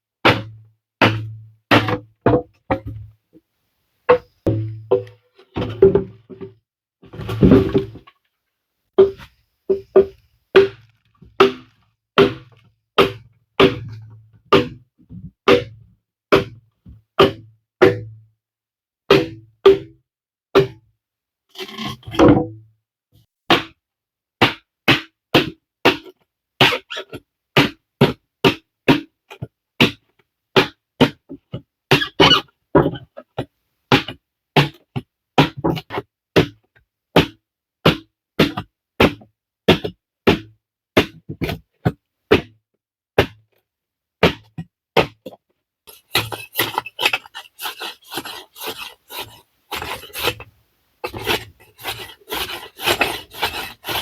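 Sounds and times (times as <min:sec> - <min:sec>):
sharp strikes on wood: 0:45.9 - 0:54.0
tool scraping wood: 0:45.9 - 0:54.0.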